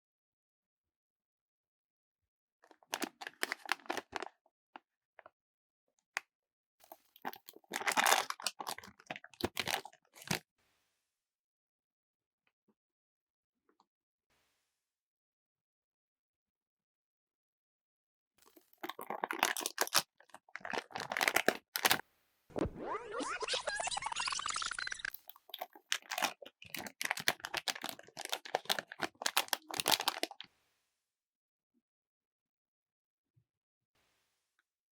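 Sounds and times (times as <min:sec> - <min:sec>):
foil packet crinkling: 0:02.9 - 0:04.3, 0:07.2 - 0:10.4, 0:18.8 - 0:22.0, 0:25.4 - 0:30.5
foil packet tearing: 0:03.0 - 0:04.3, 0:07.3 - 0:10.4, 0:18.8 - 0:22.0, 0:25.6 - 0:30.4
wrapper ripping: 0:07.2 - 0:10.4, 0:18.8 - 0:22.0, 0:25.6 - 0:30.4.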